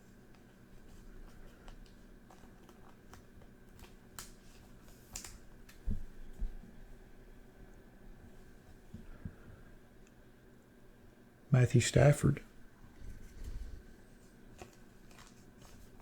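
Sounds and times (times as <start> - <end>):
cards clicking and snapping: 1.6 - 5.8.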